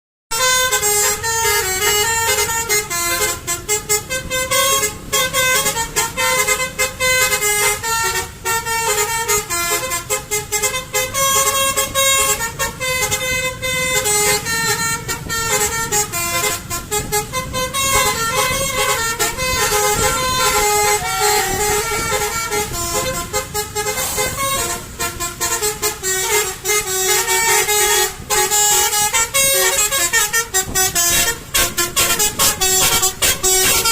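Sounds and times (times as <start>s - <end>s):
multi-tone bus horn melody: 0.3s - 33.9s.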